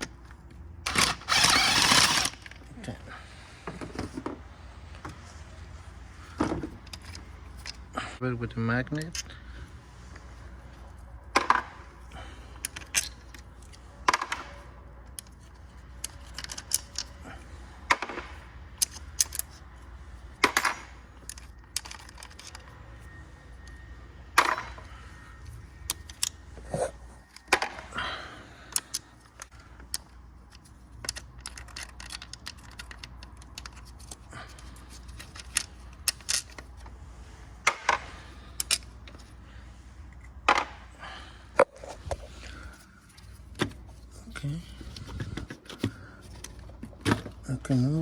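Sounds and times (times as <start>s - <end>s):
metal tools clicking and clinking: 12.6s - 17.3s, 17.9s - 19.6s, 20.4s - 23.8s, 24.4s - 26.4s, 27.2s - 36.8s, 37.6s - 39.3s.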